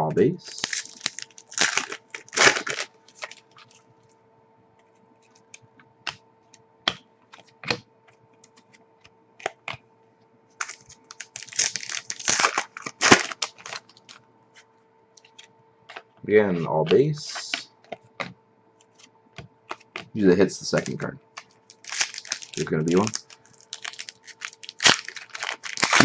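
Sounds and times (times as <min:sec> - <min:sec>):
trading cards clicking and rustling: 0:00.5 - 0:03.8, 0:10.6 - 0:14.2, 0:15.2 - 0:19.1, 0:19.7 - 0:26.0.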